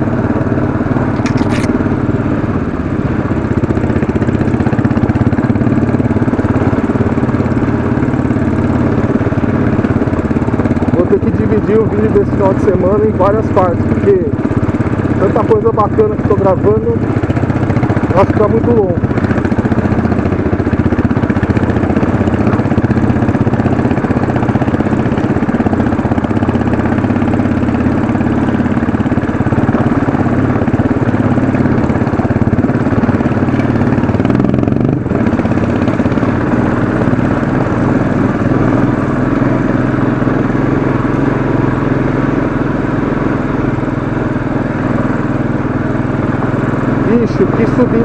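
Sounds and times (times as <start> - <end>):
motorcycle engine under load: 0.0 - 48.0.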